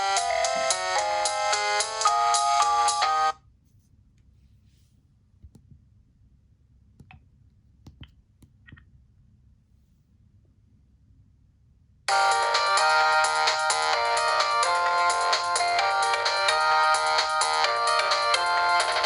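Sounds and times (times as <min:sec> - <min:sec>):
electronic phone ringtone: 0:00.0 - 0:03.4, 0:12.1 - 0:19.0.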